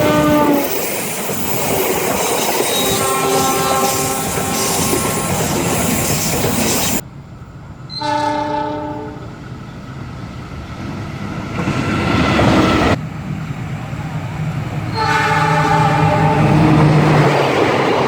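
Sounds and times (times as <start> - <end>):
locomotive horn chord: 2.9 - 4.9, 8.0 - 9.3, 14.9 - 17.0
distant horn blast: 14.9 - 17.2.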